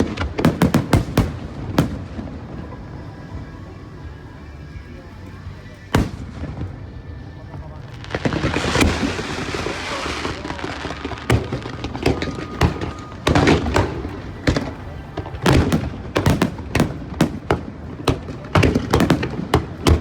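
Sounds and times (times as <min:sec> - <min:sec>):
fireworks shells bursting: 0:08.0 - 0:20.0.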